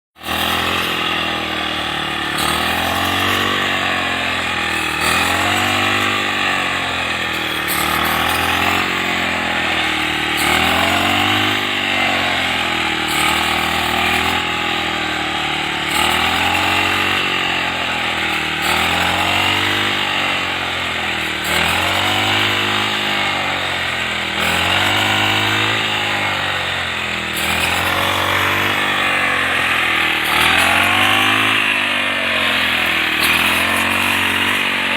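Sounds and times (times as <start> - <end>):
brush cutter engine running: 0.2 - 34.9.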